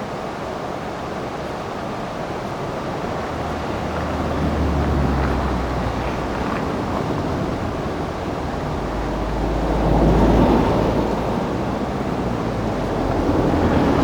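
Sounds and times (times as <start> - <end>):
rushing river water: 0.0 - 14.0
wind buffeting microphone: 3.2 - 14.0.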